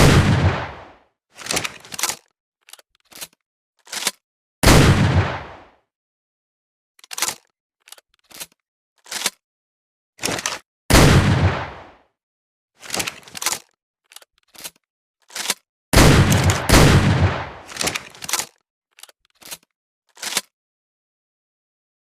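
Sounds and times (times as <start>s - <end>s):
shotgun blasts with ringing tail: 0.0s - 0.9s, 4.6s - 5.6s, 10.9s - 11.8s, 16.0s - 17.6s
gun handling clicks: 7.0s - 9.4s, 12.8s - 20.5s.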